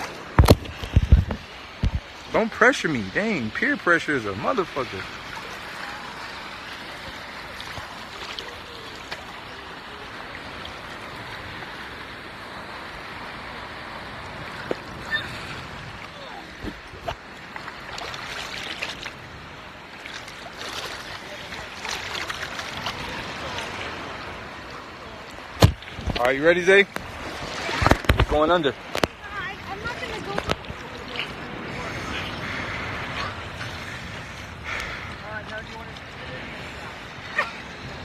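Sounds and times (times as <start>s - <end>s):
moving water: 0.0s - 38.0s
small water splashes: 0.0s - 38.0s.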